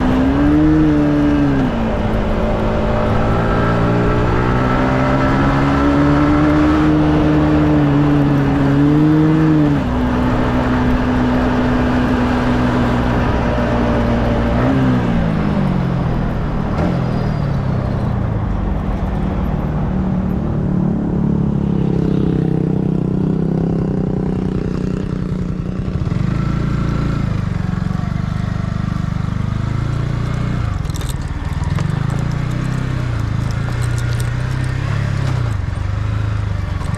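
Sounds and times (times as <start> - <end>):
motorcycle engine revving: 0.0 - 36.9.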